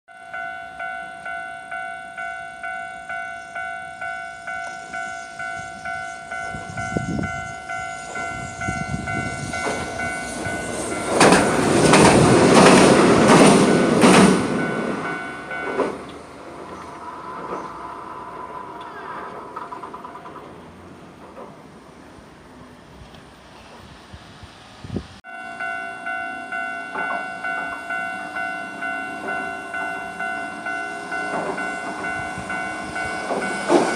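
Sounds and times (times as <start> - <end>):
level-crossing warning bell: 0.1 - 19.1, 25.2 - 33.9
train rumble and wheel clatter: 0.3 - 33.9.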